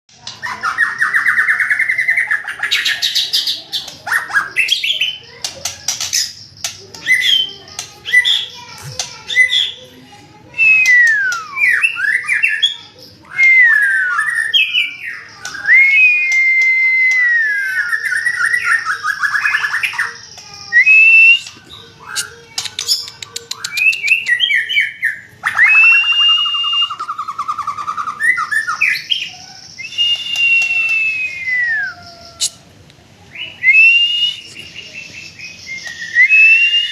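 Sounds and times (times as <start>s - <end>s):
sharp bird clicks: 5.4s - 7.1s, 15.4s - 17.3s, 21.2s - 24.6s, 32.4s - 32.6s
bird singing whistled phrases: 10.6s - 32.6s, 33.3s - 36.9s.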